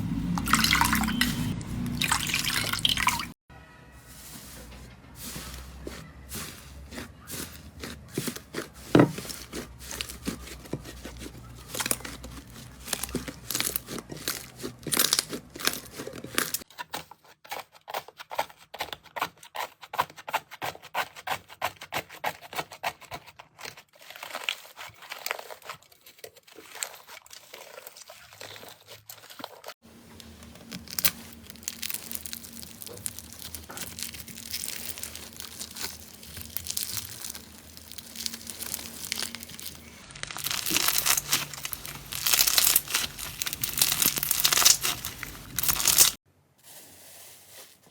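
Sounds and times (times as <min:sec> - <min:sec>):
slime crackling pops: 0:30.9 - 0:46.2.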